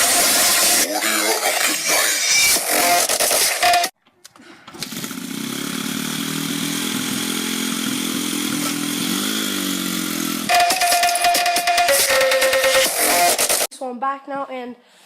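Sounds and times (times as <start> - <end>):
riding lawnmower engine running: 4.8 - 11.6.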